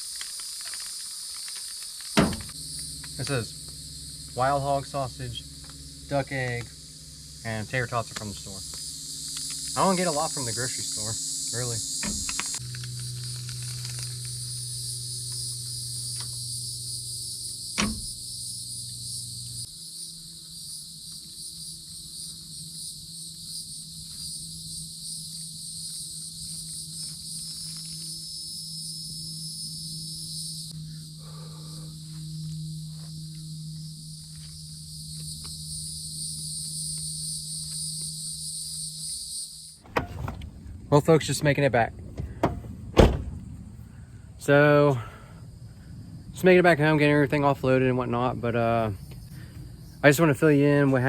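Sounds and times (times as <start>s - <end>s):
crickets and insects chirring: 0.0s - 51.0s
low steady hum: 2.2s - 19.7s, 29.0s - 39.0s, 39.8s - 51.0s.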